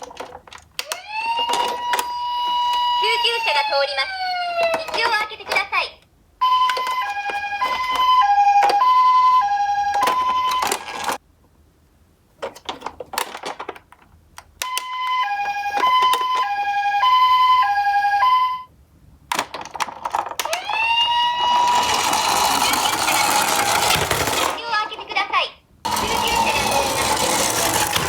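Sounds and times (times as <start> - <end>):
ambulance siren two-tone: 0.9 - 4.8, 6.4 - 11.1, 14.7 - 18.7, 20.5 - 22.7.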